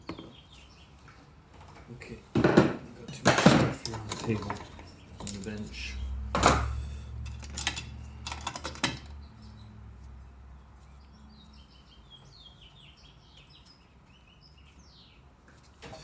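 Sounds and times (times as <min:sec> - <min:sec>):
small birds chirping faintly: 0:00.0 - 0:02.3, 0:09.0 - 0:16.0
metal tools clattering on workbench: 0:02.4 - 0:05.6, 0:06.4 - 0:09.2.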